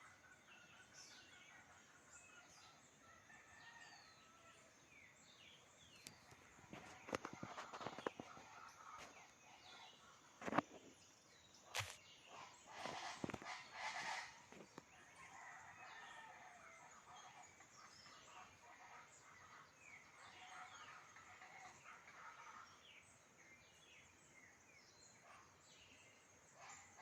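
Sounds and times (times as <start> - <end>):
small birds chirping: 5.0 - 16.4
distant fowl crowing: 12.7 - 14.6.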